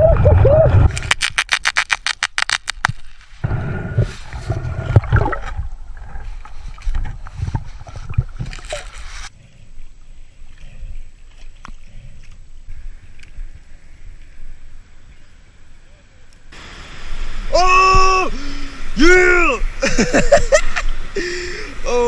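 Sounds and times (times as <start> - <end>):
quiet hiss: 0.7 - 22.0
water gurgling: 3.4 - 9.1.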